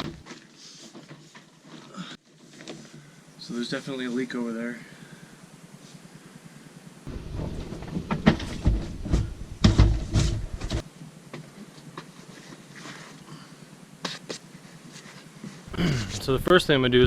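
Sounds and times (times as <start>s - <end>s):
person crawling and rustling: 11.4s - 16.5s.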